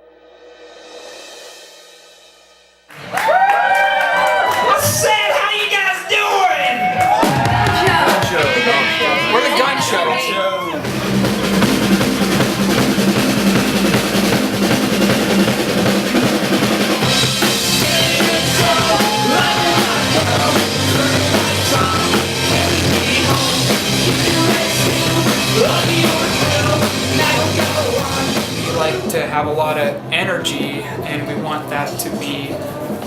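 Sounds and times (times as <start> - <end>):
rock music: 4.3 - 33.0
bass drum and snare: 6.9 - 8.7, 10.8 - 29.4.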